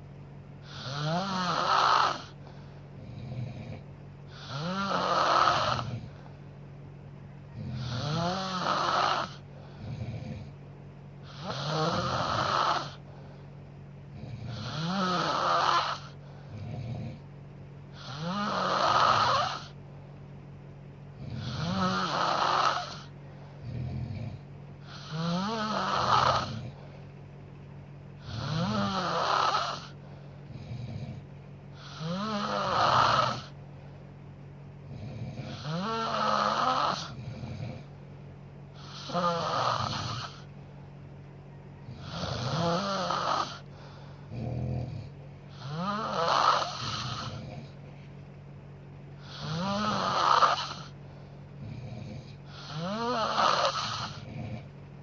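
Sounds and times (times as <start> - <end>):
woman snoring: 0.6 - 6.3, 7.5 - 10.6, 11.2 - 13.1, 14.1 - 17.3, 17.9 - 19.8, 21.2 - 27.0, 28.2 - 33.6, 34.8 - 38.0, 38.7 - 40.5, 41.8 - 47.8, 49.2 - 51.0, 51.6 - 54.7
soft breath sound: 43.6 - 44.3.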